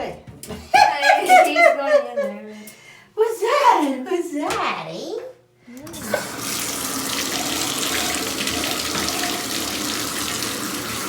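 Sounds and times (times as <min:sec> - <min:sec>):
tap water running into bathtub: 0:05.8 - 0:11.0.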